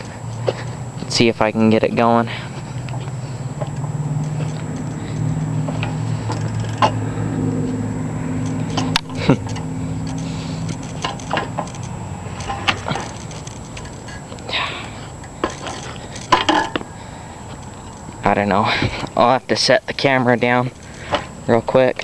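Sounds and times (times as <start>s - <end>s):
drivetrain clicks and knocks: 0.0s - 1.2s, 2.7s - 7.0s, 8.4s - 19.2s
bicycle tyre whirring on roller: 2.3s - 18.2s.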